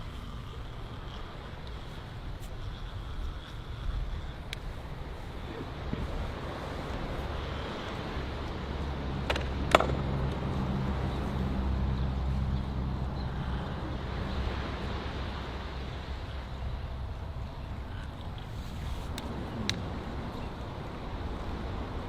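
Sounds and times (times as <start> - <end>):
wind noise: 0.0 - 22.0.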